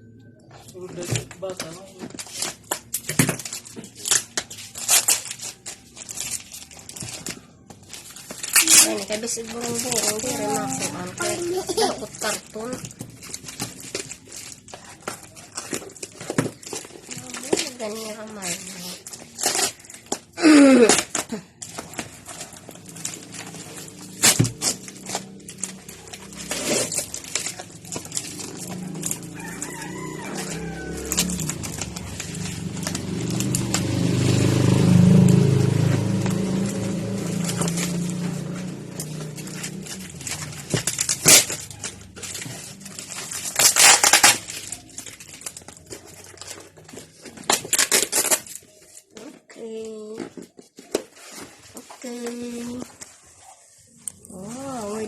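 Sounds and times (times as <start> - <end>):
cardboard packaging crinkling: 0.6 - 55.0
rooster crowing: 28.7 - 31.9
loud crackling bursts: 39.0 - 45.5.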